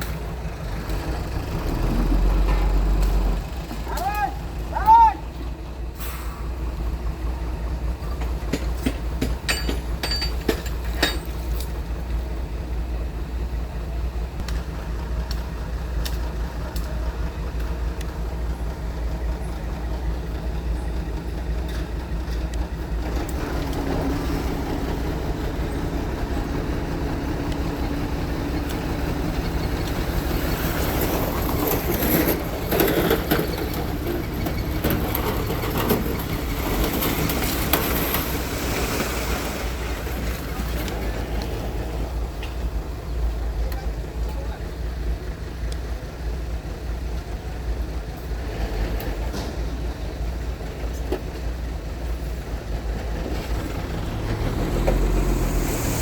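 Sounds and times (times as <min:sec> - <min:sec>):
bulldozer diesel engine running: 0:00.0 - 0:56.0
metallic clanks: 0:08.1 - 0:11.8.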